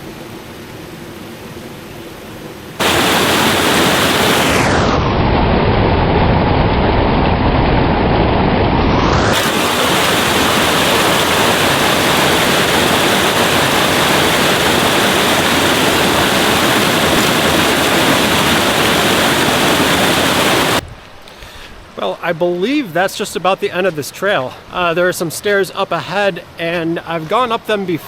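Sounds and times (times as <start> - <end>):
waterfall rushing: 2.8 - 5.0, 9.0 - 20.8.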